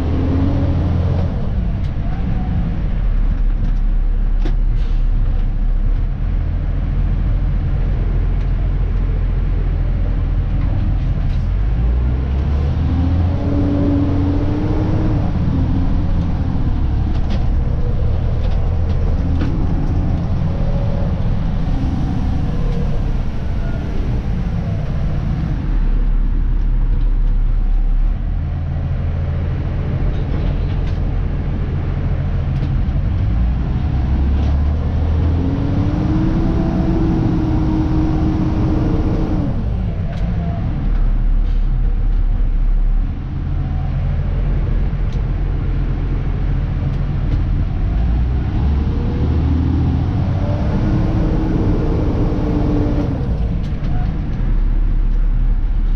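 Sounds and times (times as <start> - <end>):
garbage truck diesel engine running: 0.0 - 35.6.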